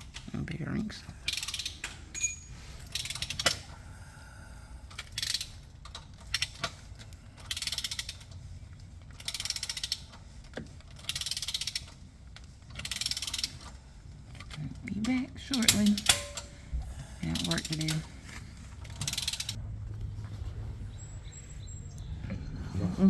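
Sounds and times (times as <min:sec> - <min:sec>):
ratchet wrench clicking: 0:01.2 - 0:03.6, 0:04.9 - 0:06.7, 0:07.4 - 0:08.4, 0:09.1 - 0:12.0, 0:12.7 - 0:13.8, 0:15.5 - 0:16.5, 0:17.4 - 0:18.1, 0:18.8 - 0:19.6.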